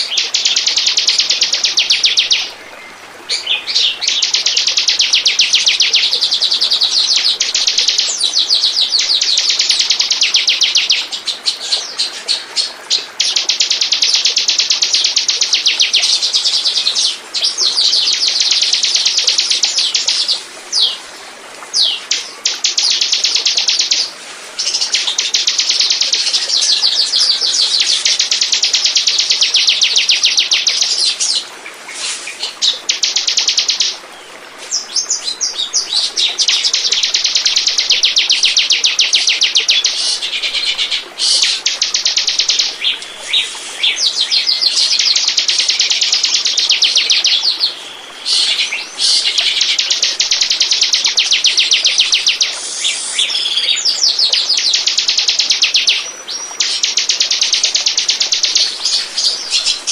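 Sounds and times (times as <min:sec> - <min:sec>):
bird singing rapid high notes: 0:34.8 - 0:59.9.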